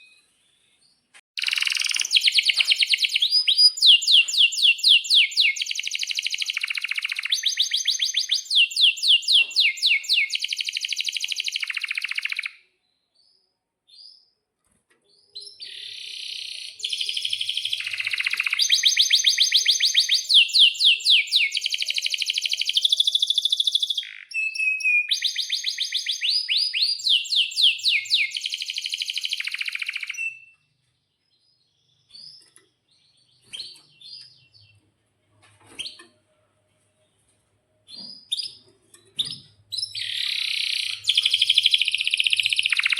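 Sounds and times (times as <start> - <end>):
canary singing trills: 0.9 - 12.6, 15.2 - 30.6, 37.8 - 42.9.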